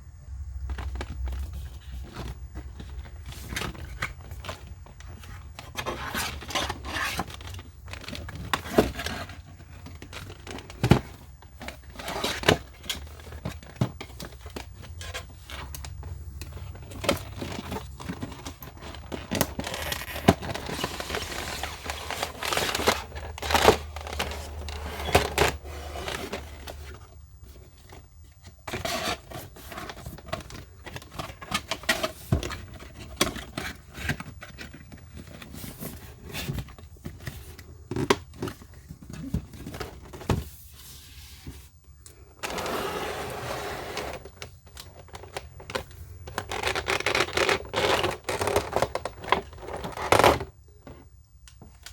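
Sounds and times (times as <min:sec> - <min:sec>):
packaging rustling and crinkling: 0:00.7 - 0:41.8, 0:42.4 - 0:51.9.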